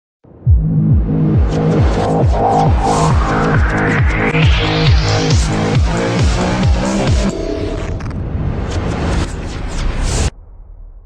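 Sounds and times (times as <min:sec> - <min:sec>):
low beat: 0:00.3 - 0:08.6
electronic dance music: 0:00.5 - 0:09.3
hissing swell: 0:01.8 - 0:09.3.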